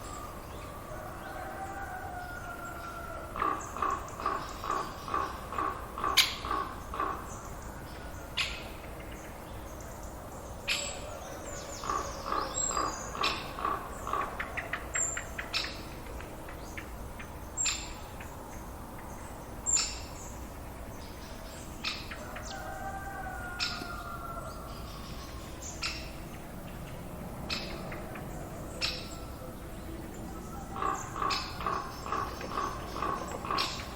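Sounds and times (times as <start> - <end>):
birds chirping: 0.0 - 33.9
rapid pulsing bird call: 27.4 - 33.9.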